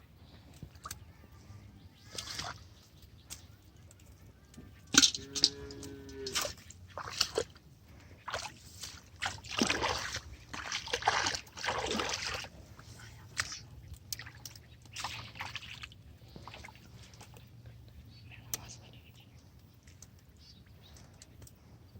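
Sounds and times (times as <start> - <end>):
water splashing and sloshing: 2.0 - 4.2, 4.8 - 17.7.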